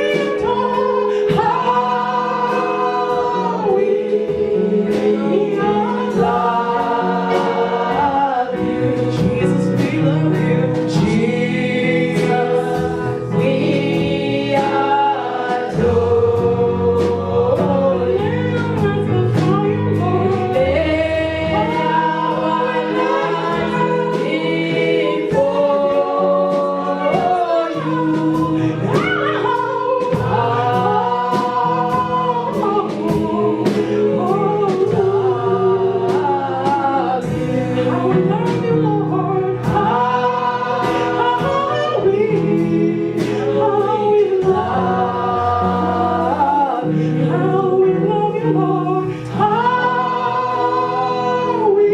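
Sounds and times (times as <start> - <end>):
band accompaniment: 0.0 - 51.9
group singing gospel song: 0.0 - 51.9.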